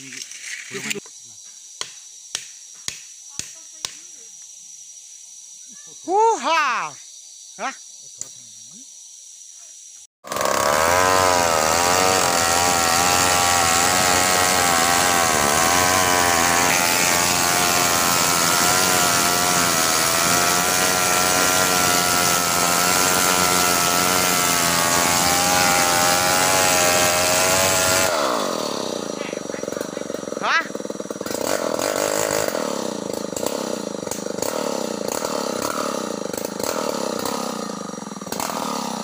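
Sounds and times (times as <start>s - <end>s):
chainsaw cutting a log: 10.2s - 39.0s.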